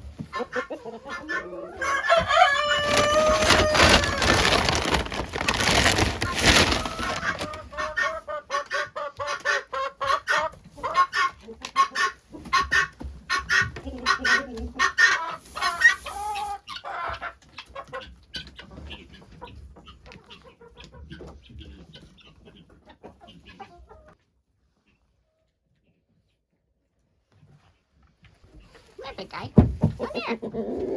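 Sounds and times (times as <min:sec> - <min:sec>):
chickens clucking: 0:00.0 - 0:26.8, 0:27.6 - 0:30.9
rooster crowing: 0:01.8 - 0:04.4.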